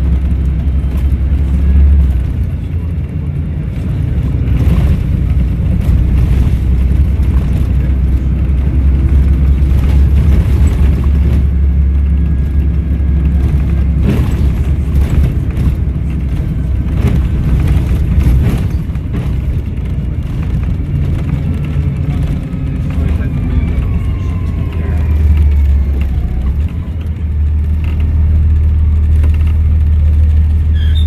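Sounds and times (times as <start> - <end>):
bus diesel engine drone: 0.0 - 31.0
body knocks and rattles: 4.3 - 23.2.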